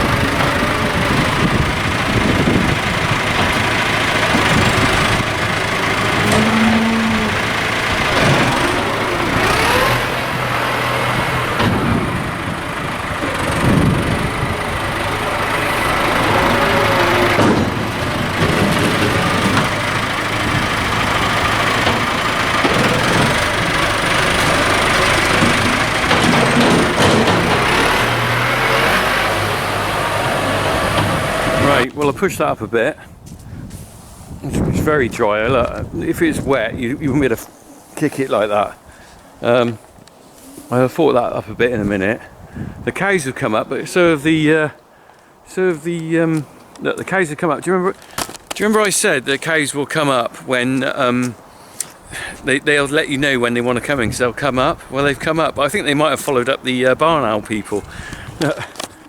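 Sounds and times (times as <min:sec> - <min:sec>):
tractor engine running: 0:00.0 - 0:33.3, 0:45.5 - 0:59.0.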